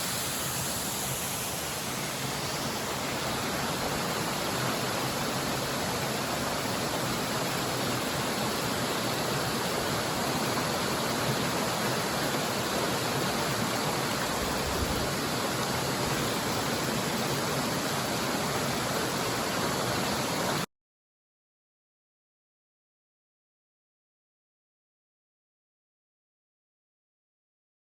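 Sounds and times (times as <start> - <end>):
waterfall rushing: 0.0 - 20.6.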